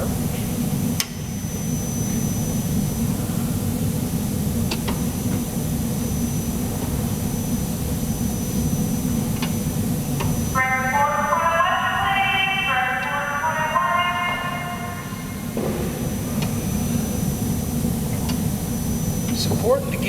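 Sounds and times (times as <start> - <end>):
steady low rumble: 10.5 - 18.9.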